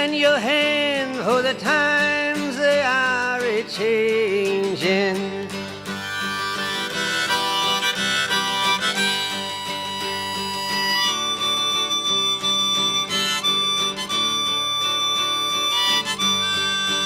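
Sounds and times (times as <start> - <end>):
harmonica melody: 0.0 - 17.0
strummed acoustic guitar: 0.0 - 17.0.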